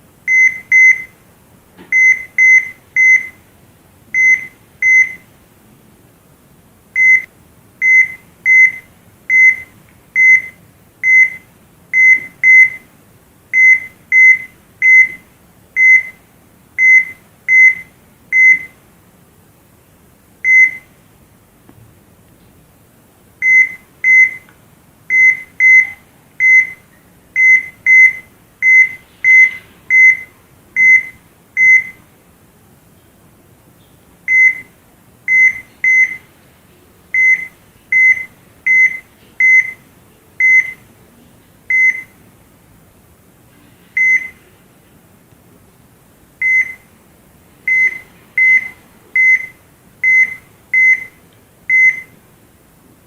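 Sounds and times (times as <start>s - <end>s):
heart monitor beeping: 0.3s - 1.2s, 1.9s - 3.4s, 4.2s - 5.3s, 7.0s - 12.9s, 13.5s - 16.2s, 16.8s - 18.8s, 20.4s - 20.9s, 23.4s - 24.5s, 25.1s - 32.0s, 34.3s - 34.7s, 35.3s - 36.3s, 37.1s - 39.8s, 40.4s - 40.8s, 41.7s - 42.2s, 44.0s - 44.4s, 46.4s - 46.9s, 47.7s - 52.2s.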